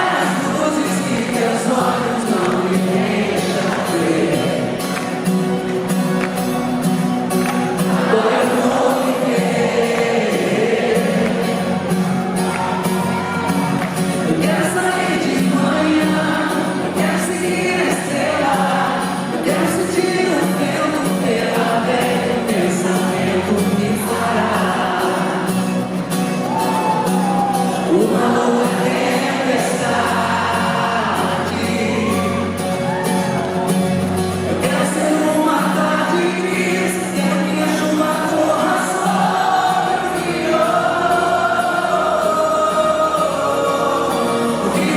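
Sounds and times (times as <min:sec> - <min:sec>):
person singing: 0:00.0 - 0:05.0, 0:07.8 - 0:25.8, 0:26.5 - 0:33.8, 0:34.4 - 0:44.9
crowd voices: 0:00.0 - 0:44.9.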